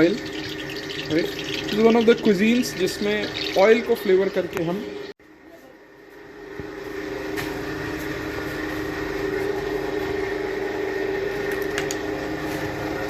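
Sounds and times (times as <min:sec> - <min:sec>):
appliance motor humming: 0:00.0 - 0:05.1.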